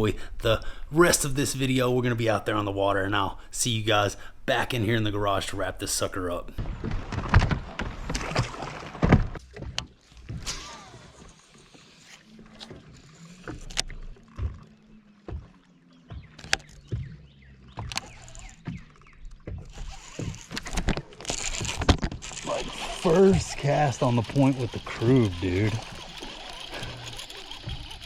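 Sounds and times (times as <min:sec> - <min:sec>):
knocks and clatter on boat: 0:06.5 - 0:11.5, 0:12.5 - 0:22.4, 0:23.2 - 0:28.0.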